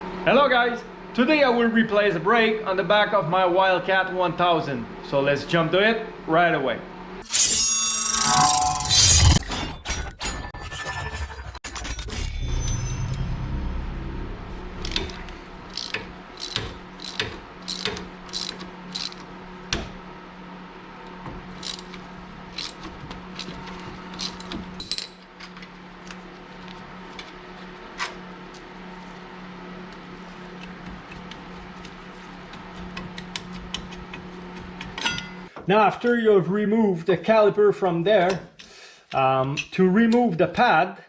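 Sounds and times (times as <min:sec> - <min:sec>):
tools and metal parts clinking: 0:14.8 - 0:20.0, 0:21.0 - 0:30.0.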